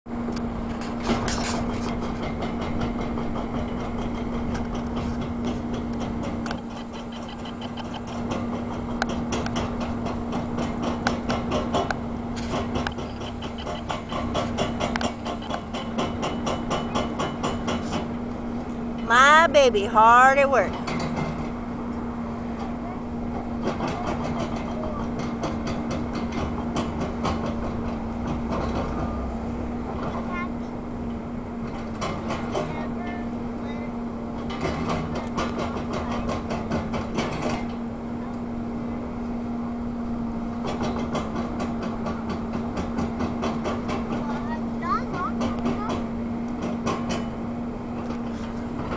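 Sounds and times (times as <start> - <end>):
excavator engine running: 0.1 - 48.9.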